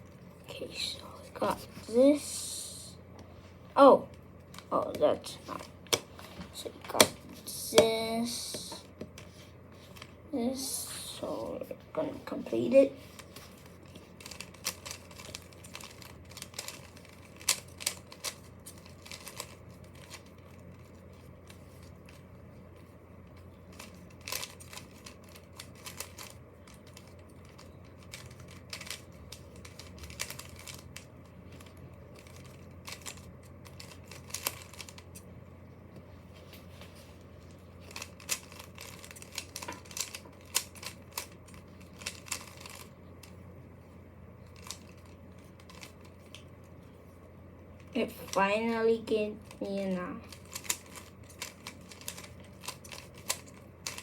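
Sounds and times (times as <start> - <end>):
faint low hum: 0.0 - 54.0
puzzle cube clicking and rattling: 12.7 - 22.2, 23.7 - 35.3, 37.4 - 43.4, 44.5 - 46.5, 50.2 - 54.0.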